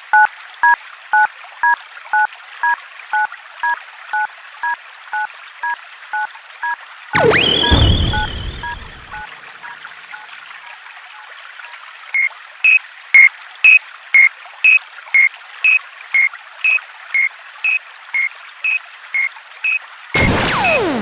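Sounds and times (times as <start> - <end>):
faint lower two-tone signal: 7.2 - 9.8
level crossing two-pitch tones: 7.2 - 9.8, 20.2 - 21.0.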